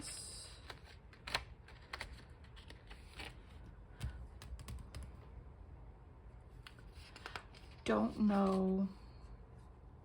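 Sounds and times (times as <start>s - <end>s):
paper rustling: 6.6s - 8.8s.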